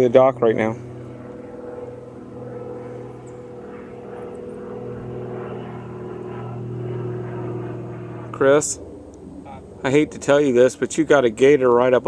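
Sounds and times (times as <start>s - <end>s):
distant engine drone: 0.0s - 12.0s.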